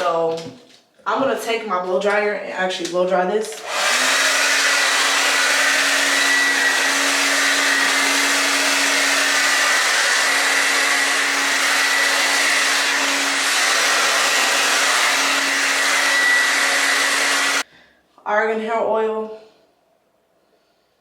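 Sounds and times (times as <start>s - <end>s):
hair dryer running: 3.5s - 17.7s.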